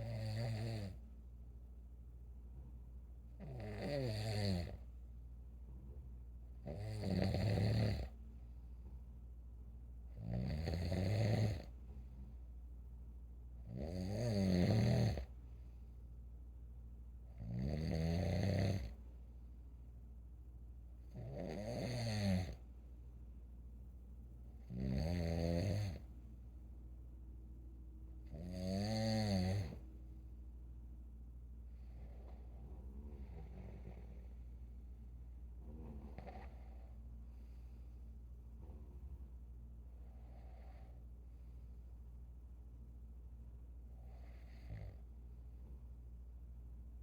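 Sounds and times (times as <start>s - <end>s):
person snoring: 0.0s - 1.0s, 3.4s - 4.8s, 6.6s - 8.2s, 10.2s - 11.7s, 13.7s - 15.3s, 17.4s - 19.0s, 21.2s - 22.6s, 24.7s - 26.0s, 28.3s - 29.8s, 31.8s - 34.4s, 35.6s - 36.9s.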